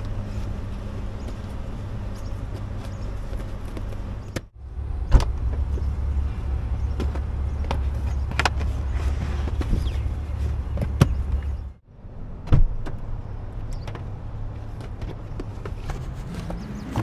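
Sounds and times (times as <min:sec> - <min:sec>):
car engine rumbling: 0:00.0 - 0:17.0.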